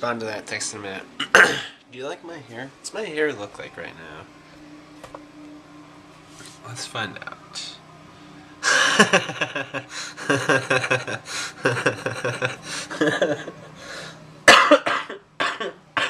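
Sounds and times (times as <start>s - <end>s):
man laughing hard: 8.6s - 14.0s.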